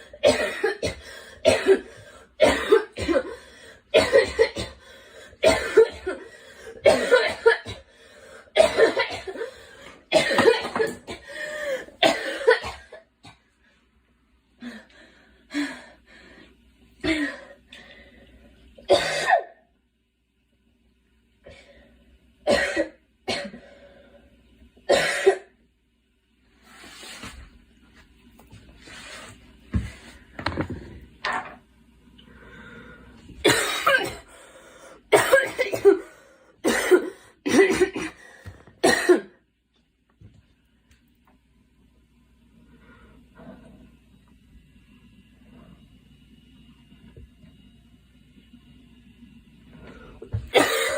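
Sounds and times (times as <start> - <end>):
girl coughing: 0.2 - 3.4, 4.0 - 4.8, 5.4 - 7.9, 8.6 - 9.5, 10.1 - 11.3, 12.0 - 13.4, 18.9 - 19.6, 22.5 - 23.6, 24.9 - 25.5, 33.4 - 34.3, 35.1 - 38.2, 38.8 - 39.4, 50.5 - 50.9.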